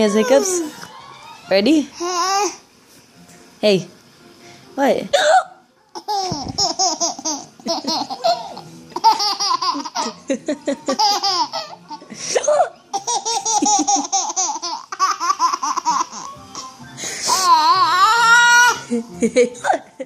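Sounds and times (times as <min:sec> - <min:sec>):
baby laughing: 0:05.9 - 0:19.8.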